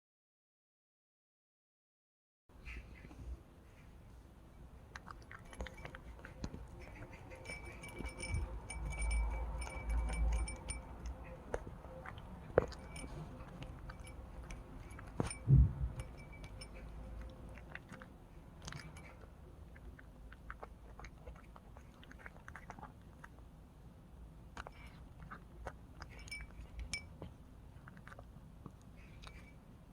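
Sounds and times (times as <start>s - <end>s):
cat crunching dry kibble: 4.9s - 23.5s
loud low thump: 15.5s - 16.0s.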